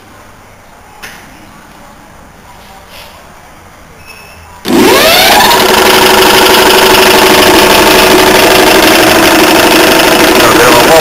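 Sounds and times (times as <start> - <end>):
air compressor pump: 4.6 - 11.0
electric motor humming: 4.7 - 11.0.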